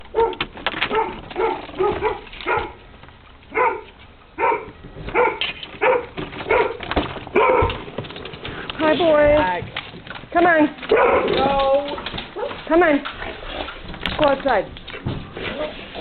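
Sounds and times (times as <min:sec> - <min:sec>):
dog barking: 0:00.1 - 0:02.8, 0:03.5 - 0:07.8, 0:10.9 - 0:11.4, 0:12.4 - 0:12.6.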